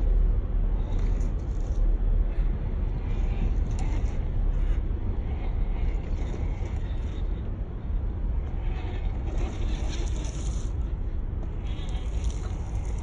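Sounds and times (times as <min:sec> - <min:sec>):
rc truck motor and gears rasping: 0:02.9 - 0:07.5, 0:08.4 - 0:13.0.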